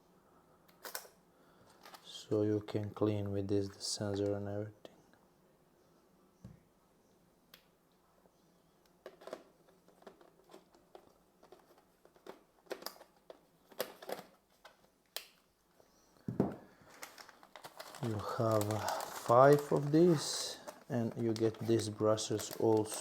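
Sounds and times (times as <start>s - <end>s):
packaging crinkling: 9.0s - 14.9s, 16.8s - 23.0s.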